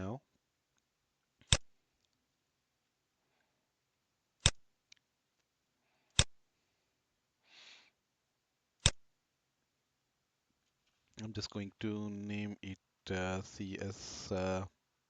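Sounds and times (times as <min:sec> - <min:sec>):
computer mouse clicks: 0:04.4 - 0:05.0, 0:06.1 - 0:06.4, 0:08.8 - 0:09.0.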